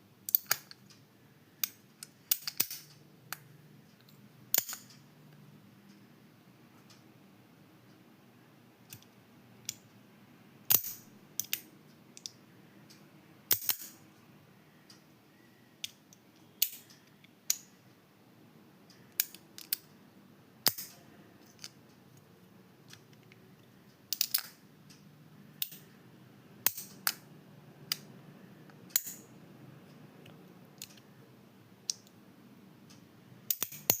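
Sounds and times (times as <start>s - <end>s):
magnetic pieces snapping together: 33.5s - 34.0s.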